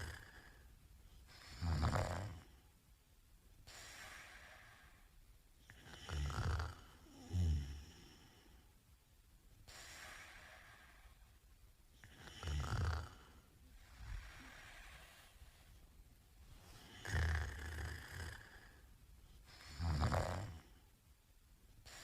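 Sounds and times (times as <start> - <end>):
man snoring: 0.0 - 0.6, 1.4 - 2.5, 5.7 - 8.4, 12.0 - 13.4, 16.8 - 18.8, 19.6 - 20.7
soft breathing out: 13.1 - 15.9.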